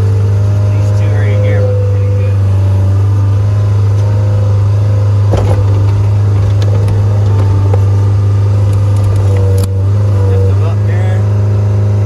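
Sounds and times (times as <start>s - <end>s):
skid steer engine running: 0.0s - 12.0s
metallic clank: 5.0s - 10.3s
light knocks: 5.2s - 9.8s.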